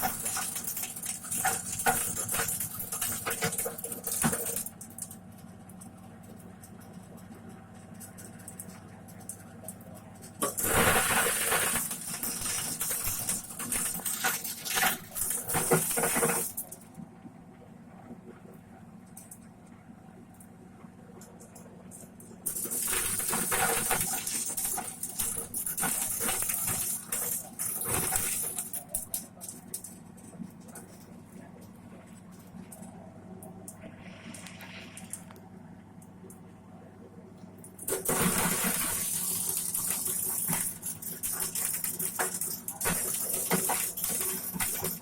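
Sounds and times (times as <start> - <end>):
rattle of corn kernels: 0.0 - 16.8, 22.0 - 31.2, 37.7 - 45.0
corn sheller motor hum: 5.7 - 16.8, 37.8 - 45.0.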